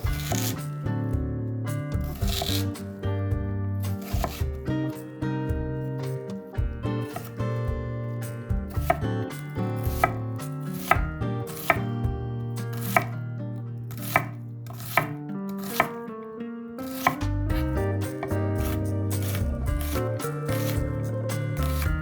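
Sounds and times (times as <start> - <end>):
knife chopping on cutting board: 0.0 - 0.7, 2.0 - 2.8, 3.9 - 4.6, 7.0 - 7.4, 8.7 - 11.9, 12.7 - 13.2, 13.9 - 16.0, 16.9 - 21.0, 21.6 - 22.0
background music: 0.0 - 22.0.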